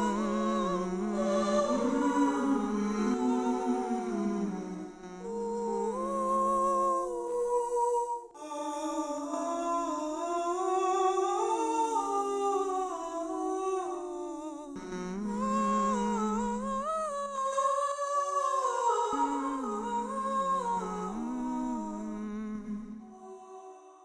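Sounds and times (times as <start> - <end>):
layered humming voice-like tones: 0.0 - 7.3.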